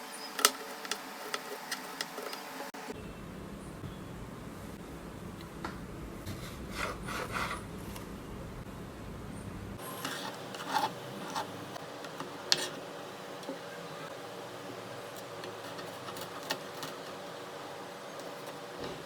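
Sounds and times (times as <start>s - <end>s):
rubbing and scraping handling: 0.0s - 2.8s, 9.8s - 13.6s, 14.8s - 19.0s.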